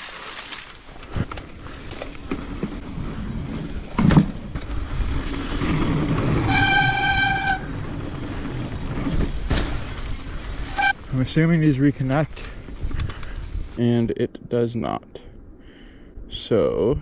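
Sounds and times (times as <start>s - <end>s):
mountain bike rolling on dirt: 0.0s - 13.8s
high horn-like tone: 6.4s - 8.2s, 10.5s - 11.0s.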